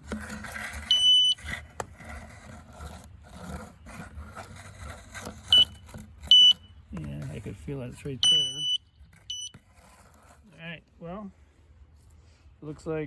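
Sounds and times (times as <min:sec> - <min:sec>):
light scraping over wood: 0:00.0 - 0:13.0
metal detector beeping: 0:00.8 - 0:01.5, 0:05.5 - 0:06.8, 0:08.2 - 0:09.6.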